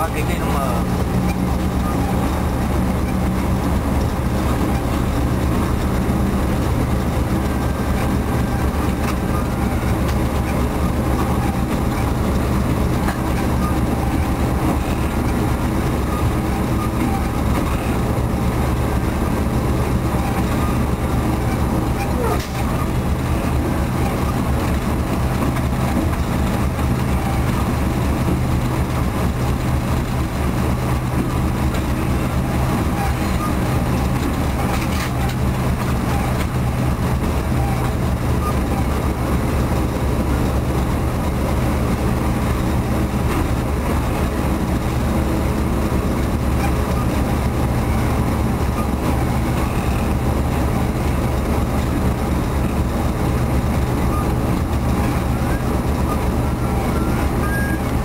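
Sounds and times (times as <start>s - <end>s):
locomotive engine drone: 0.0s - 58.0s.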